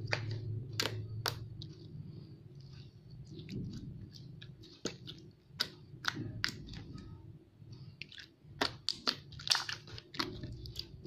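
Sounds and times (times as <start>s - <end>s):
hands squishing sticky slime: 0.0s - 11.0s.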